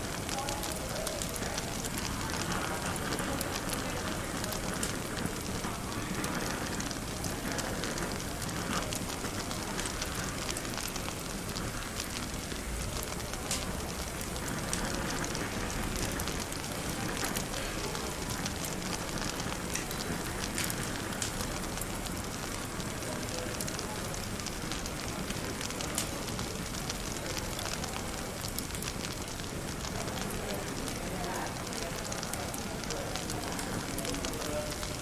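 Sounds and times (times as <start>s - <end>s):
background chatter: 0.0s - 35.0s
fireplace crackling: 0.0s - 35.0s.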